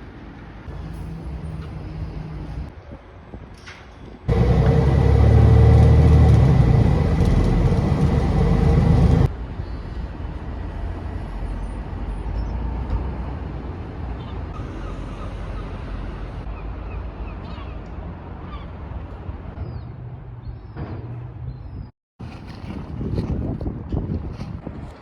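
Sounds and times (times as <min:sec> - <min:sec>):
vehicle engine rumble: 0:04.3 - 0:11.0.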